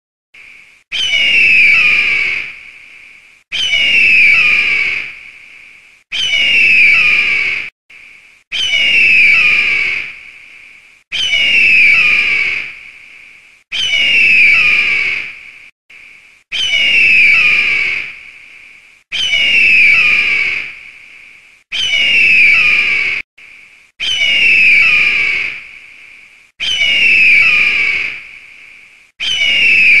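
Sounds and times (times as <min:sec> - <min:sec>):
eagle screaming: 0:00.9 - 0:02.6, 0:03.5 - 0:05.2, 0:06.1 - 0:07.7, 0:08.5 - 0:10.2, 0:11.1 - 0:12.8, 0:13.7 - 0:15.4, 0:16.5 - 0:18.2, 0:19.1 - 0:20.8, 0:21.7 - 0:23.2, 0:24.0 - 0:25.6, 0:26.6 - 0:28.2, 0:29.2 - 0:30.0.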